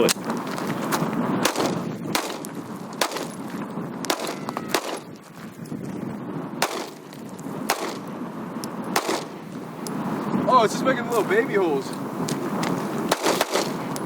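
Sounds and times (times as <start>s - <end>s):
pistol shots: 1.4s - 3.5s, 4.1s - 5.2s, 6.6s - 7.1s, 7.7s - 8.1s, 8.9s - 9.4s, 13.1s - 14.0s.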